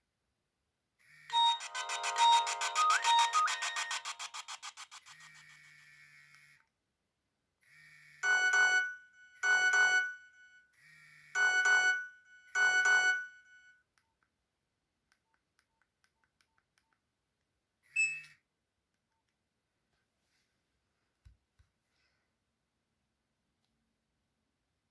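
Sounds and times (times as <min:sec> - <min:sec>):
short beep: 0:01.3 - 0:04.3
phone ringtone: 0:01.3 - 0:06.3.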